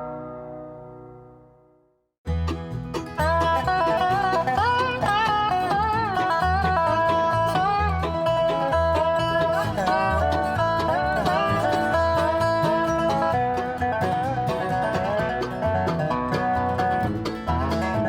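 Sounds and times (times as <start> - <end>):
bluegrass banjo and guitar music: 2.3 - 18.0.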